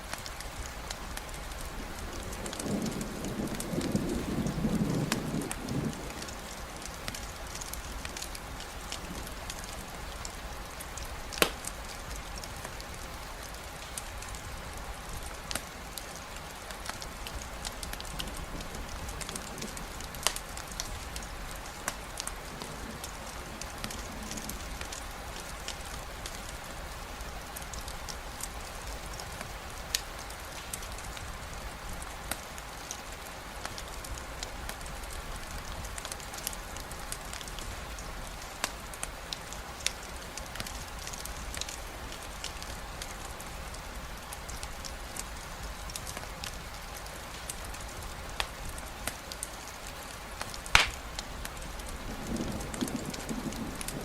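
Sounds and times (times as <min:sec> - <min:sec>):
steady rain falling: 0:00.0 - 0:54.0
sharp clicks and pops: 0:50.7 - 0:51.0.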